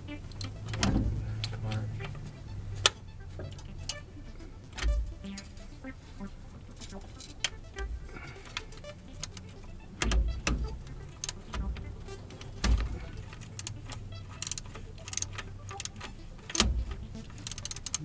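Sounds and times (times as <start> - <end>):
metallic clicks and clinks: 12.3 - 18.0.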